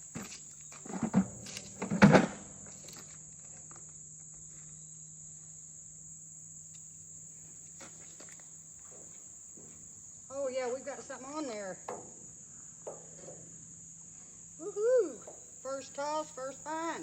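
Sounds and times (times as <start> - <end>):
crickets chirring: 0.0 - 17.0
loud knocks and clatter: 1.0 - 2.4.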